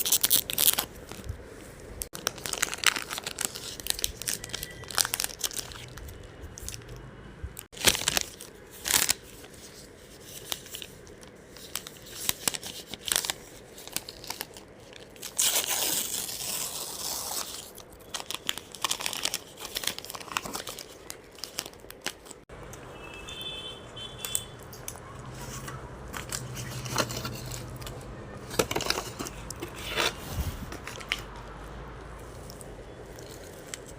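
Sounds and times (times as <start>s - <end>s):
chocolate wrapper tearing: 0.0s - 1.3s, 2.1s - 7.0s, 7.8s - 9.6s, 10.3s - 22.5s.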